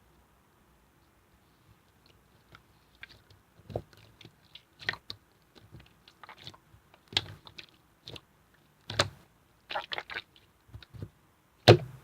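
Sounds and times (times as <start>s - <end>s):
slime squishing: 1.4s - 12.0s.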